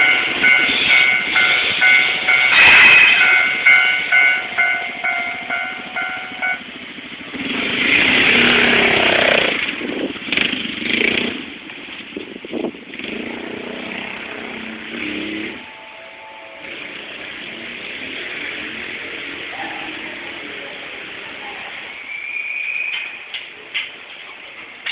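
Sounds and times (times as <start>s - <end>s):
level crossing warning bell: 0.0s - 6.7s, 15.6s - 17.9s
road traffic: 0.0s - 24.9s
motor vehicle passing loudly: 5.4s - 11.5s, 12.9s - 21.2s.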